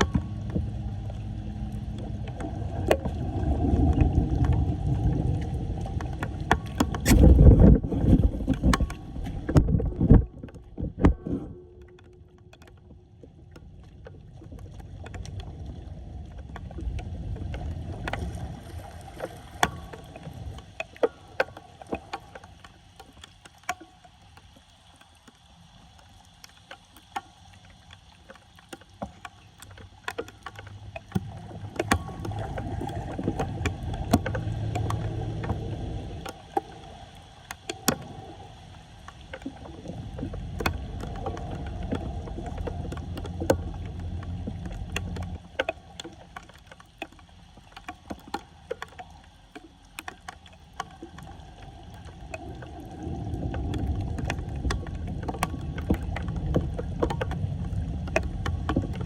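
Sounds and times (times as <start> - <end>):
floodwater draining at street drain: 11.7 - 22.4, 28.7 - 38.4, 39.0 - 49.0.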